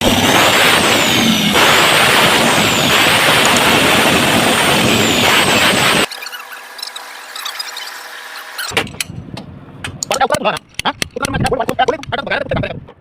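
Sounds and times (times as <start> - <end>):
diesel engine running loudly: 0.0 - 6.1.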